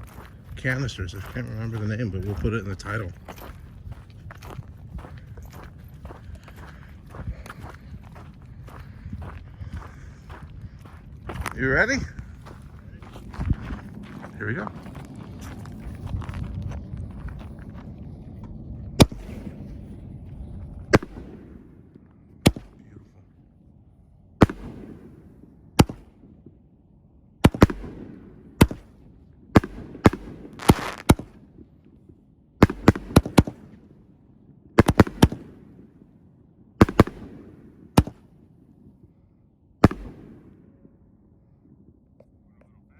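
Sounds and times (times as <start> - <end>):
rolling echo: 0.0 - 42.8
firework shells launching and bursting: 29.6 - 31.4.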